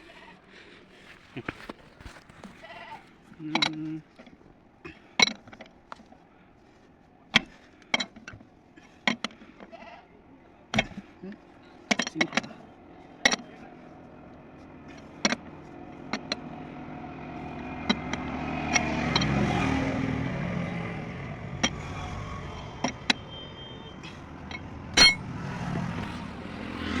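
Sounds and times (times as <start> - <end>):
road noise: 0.0 - 27.0
vehicle engine passing: 11.6 - 27.0
metallic clinks and knocks: 24.5 - 25.3.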